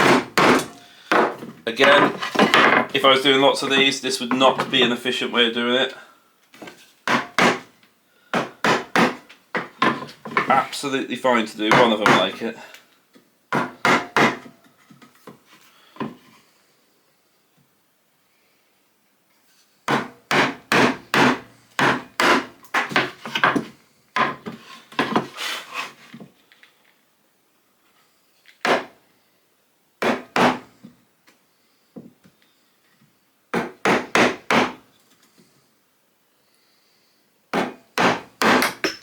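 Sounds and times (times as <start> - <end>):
hand tool striking wood: 0.0 - 2.9, 7.1 - 7.7, 8.4 - 10.6, 13.6 - 14.5, 19.9 - 23.6, 28.7 - 28.9, 30.0 - 30.7, 33.6 - 34.8, 37.6 - 39.0.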